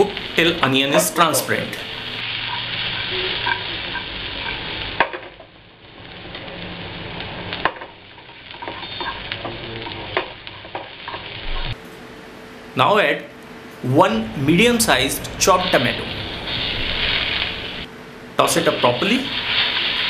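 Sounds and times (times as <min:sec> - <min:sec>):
onion sizzling in hot oil: 0:00.0 - 0:11.8, 0:14.0 - 0:20.0.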